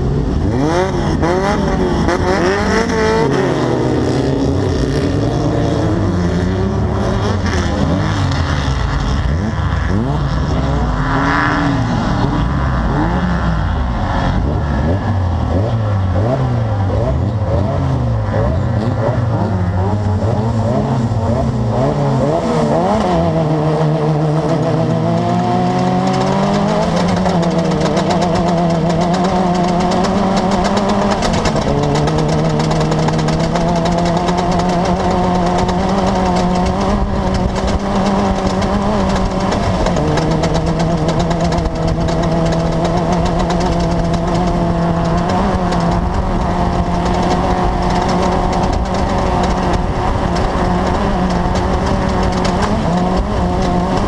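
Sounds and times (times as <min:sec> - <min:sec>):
race buggy engine running hard: 0:00.0 - 0:54.0.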